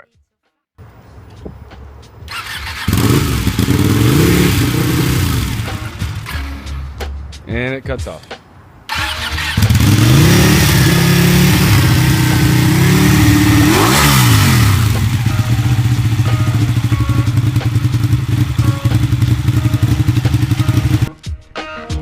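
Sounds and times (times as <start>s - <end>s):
motorcycle engine revving and idling: 2.3s - 7.0s, 8.9s - 21.1s.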